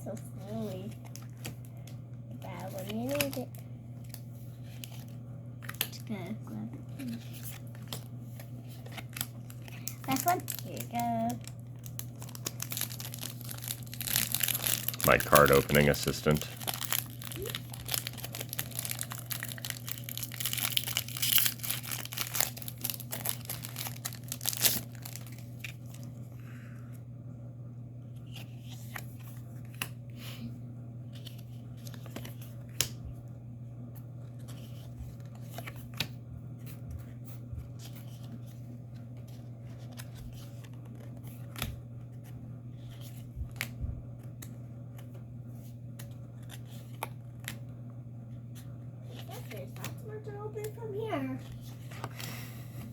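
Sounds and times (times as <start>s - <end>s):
foil wrapper tearing and crinkling: 2.6s - 3.6s, 8.8s - 26.1s
cards clicking and tapping: 7.4s - 8.1s.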